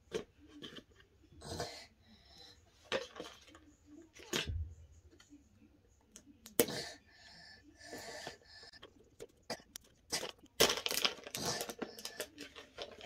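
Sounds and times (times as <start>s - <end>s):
plastic toys clicking and tapping: 8.2s - 13.0s.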